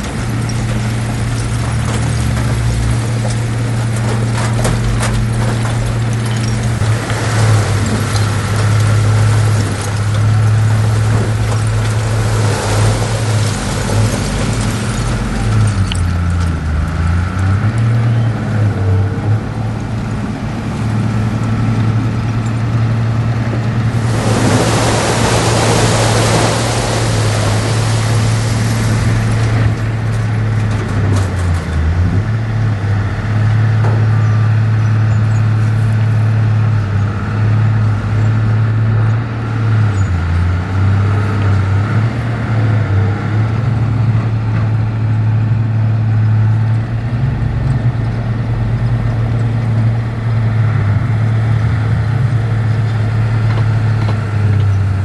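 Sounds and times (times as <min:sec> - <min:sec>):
heavy diesel engine running: 0:00.0 - 0:55.0
loud hissing rush: 0:23.9 - 0:29.5.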